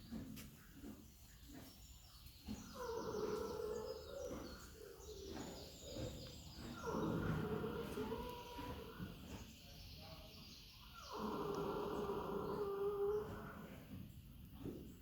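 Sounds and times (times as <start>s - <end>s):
birds chirping: 0.0s - 15.0s
animal snoring: 2.6s - 9.4s, 11.0s - 13.9s.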